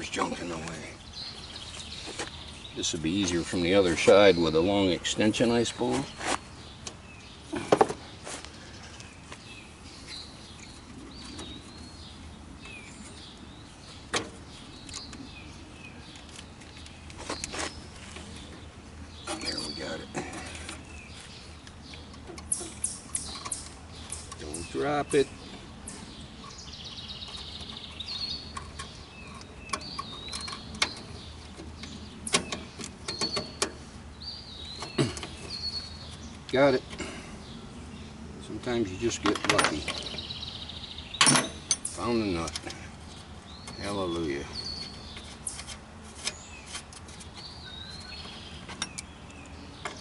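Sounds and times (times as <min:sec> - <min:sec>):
small birds chirping: 0:00.0 - 0:50.0
sharp metallic clicks of hand tools: 0:21.9 - 0:24.7
metal tools clicking and tapping: 0:21.9 - 0:24.8, 0:41.2 - 0:42.8, 0:48.1 - 0:50.0.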